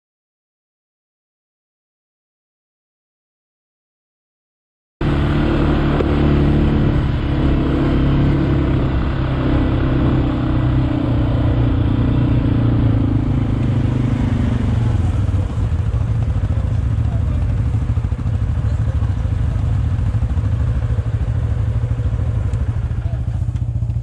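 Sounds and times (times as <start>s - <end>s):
atv engines running: 5.0s - 24.0s
higher engine note: 5.0s - 24.0s.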